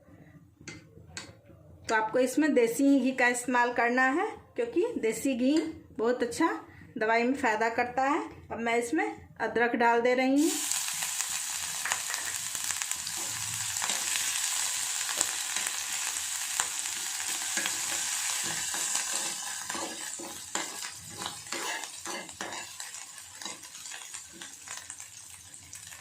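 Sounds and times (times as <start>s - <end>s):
ginger sizzling in a frying pan: 10.4s - 26.0s
spatula scraping a pan: 13.1s - 25.9s.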